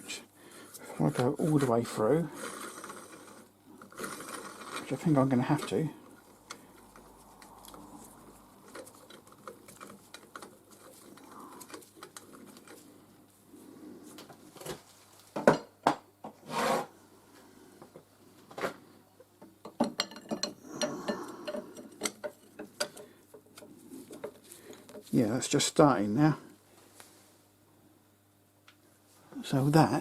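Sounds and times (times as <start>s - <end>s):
hand tools scraping metal: 20.0s - 25.1s.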